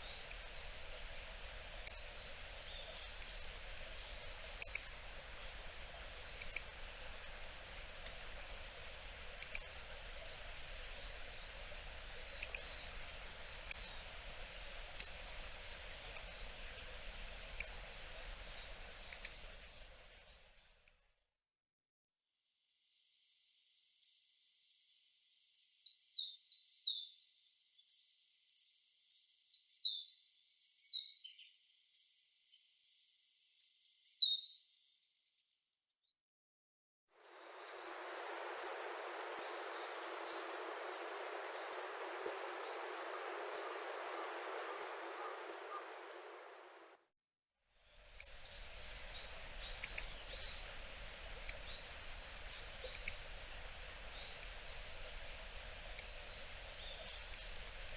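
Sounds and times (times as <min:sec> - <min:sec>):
background hiss: 0:00.0 - 0:20.9, 0:37.2 - 0:47.0, 0:47.8 - 0:57.9
bird giving sharp high calls: 0:37.3 - 0:46.8.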